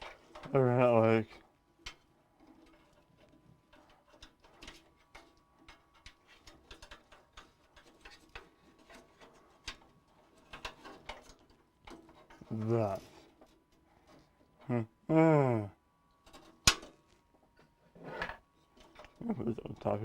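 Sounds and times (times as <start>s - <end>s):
computer parts clicking and rattling: 1.9s - 14.2s.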